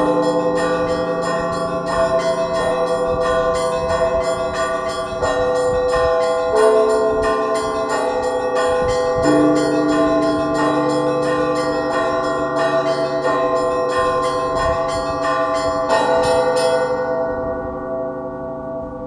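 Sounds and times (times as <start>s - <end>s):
deep bell strikes: 0.0s - 18.8s
hum of larger bells: 0.0s - 19.0s
small church bells ringing: 0.0s - 19.0s.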